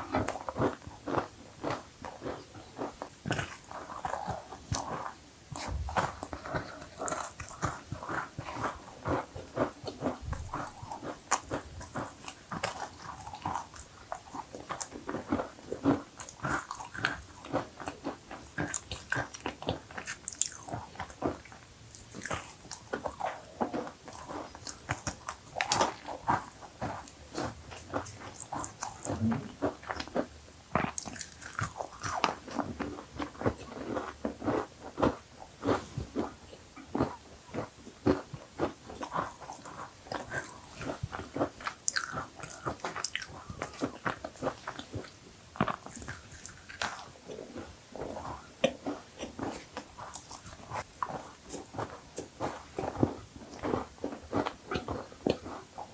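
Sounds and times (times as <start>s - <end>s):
chewing and crunching cookies: 0.0s - 55.9s.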